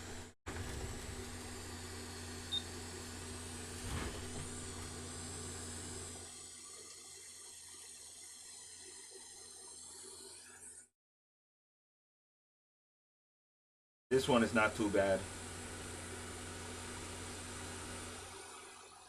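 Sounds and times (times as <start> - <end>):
desoldering tool motor whirring: 0.0 - 10.9.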